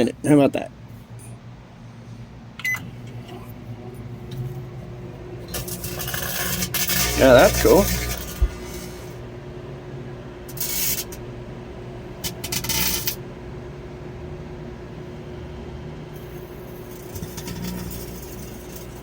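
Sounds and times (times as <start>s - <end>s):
microwave oven humming: 0.0s - 19.0s
electrical arcing crackle: 2.8s - 9.4s, 10.5s - 11.2s, 12.2s - 13.2s, 16.1s - 19.0s.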